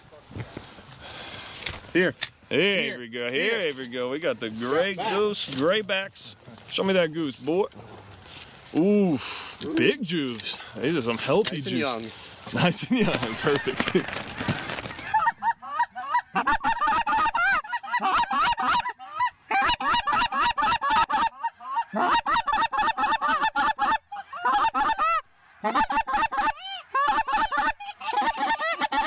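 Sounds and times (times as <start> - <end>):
geese honking and clucking: 13.0 - 29.0.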